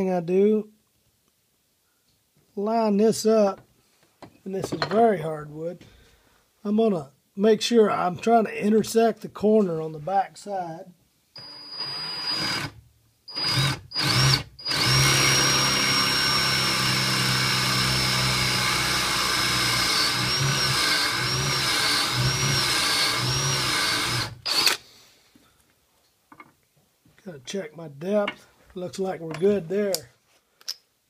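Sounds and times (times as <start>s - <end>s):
power drill boring into wood: 11.4s - 24.8s.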